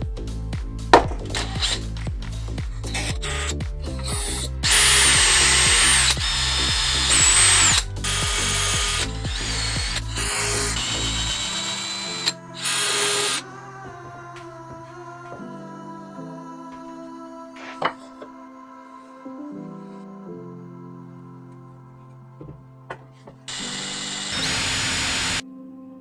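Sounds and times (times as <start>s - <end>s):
background music: 0.0s - 26.0s
power drill whining: 0.9s - 15.4s, 22.4s - 25.4s.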